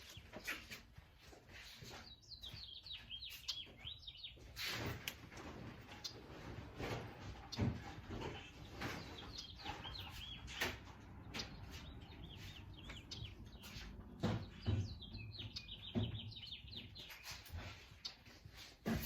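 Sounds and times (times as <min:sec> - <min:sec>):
birds chirping: 0:00.0 - 0:19.0
soft knocks and thumps: 0:04.8 - 0:09.9, 0:13.6 - 0:16.4.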